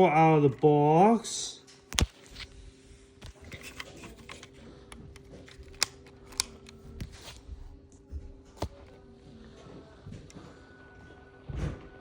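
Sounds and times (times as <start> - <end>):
plastic remote control clicks and taps: 3.2 - 7.1.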